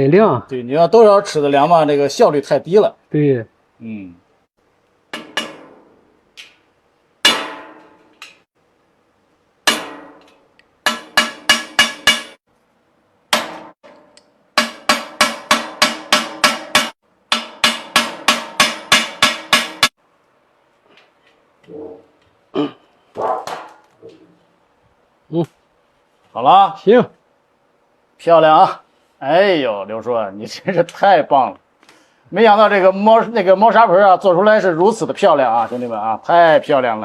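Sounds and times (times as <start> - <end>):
hammer blows ringing: 7.2 - 8.0, 10.8 - 12.4, 14.6 - 19.9.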